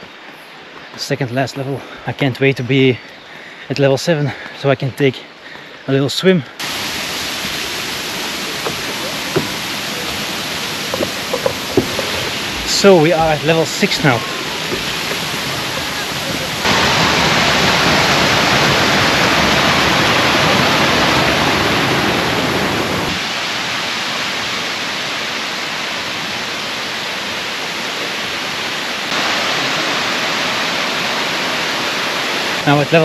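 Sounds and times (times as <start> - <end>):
waterfall rushing: 6.6 - 33.0.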